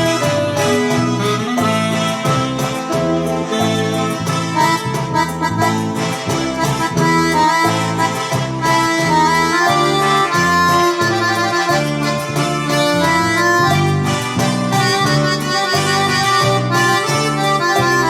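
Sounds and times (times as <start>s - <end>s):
electronic keyboard melody: 0.0s - 18.0s
rhythmic bass accompaniment: 0.0s - 18.0s.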